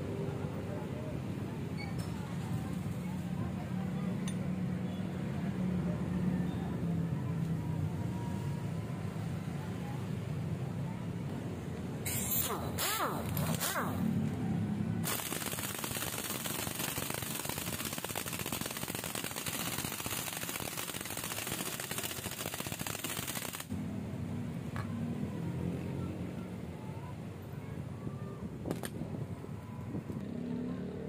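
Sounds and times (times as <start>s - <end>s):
rapid mechanical rattling: 12.1s - 14.0s, 15.0s - 23.7s.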